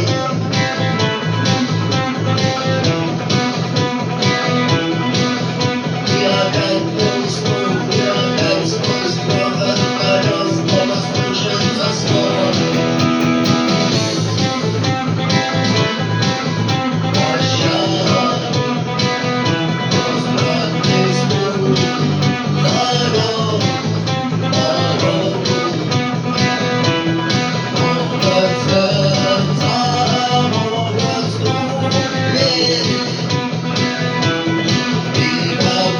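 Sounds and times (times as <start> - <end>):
plucked guitar music: 12.1 - 17.3.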